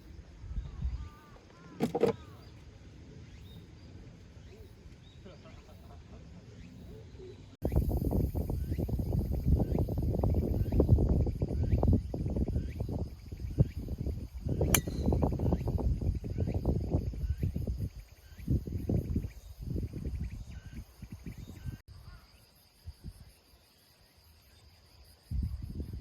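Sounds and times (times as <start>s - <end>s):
wind buffeting microphone: 7.6s - 21.8s
insects chirping: 7.6s - 26.0s.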